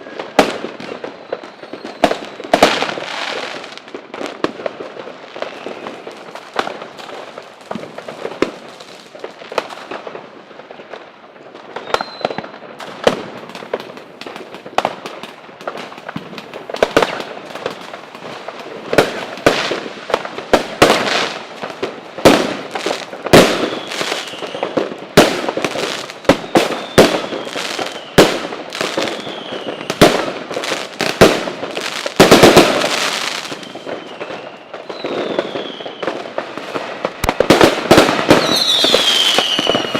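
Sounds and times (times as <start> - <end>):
fireworks bangs: 0.0 - 39.9
fireworks crackle: 0.0 - 39.9
faint falling whistles: 0.8 - 2.5, 11.8 - 12.6, 23.7 - 24.7, 26.4 - 28.2, 33.4 - 36.2.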